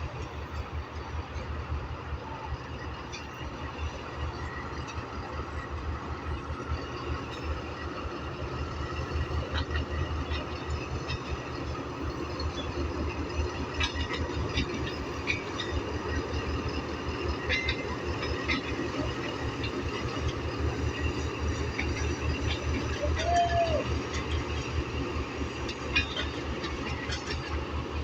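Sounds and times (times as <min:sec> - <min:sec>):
diesel locomotive engine rumbling: 0:00.0 - 0:28.0
train clicks and knocks: 0:00.0 - 0:28.0.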